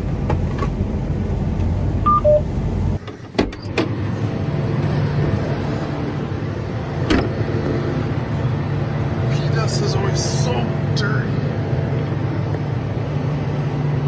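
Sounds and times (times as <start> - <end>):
combine harvester droning: 0.0 - 14.0
short electronic beeps: 2.1 - 2.4.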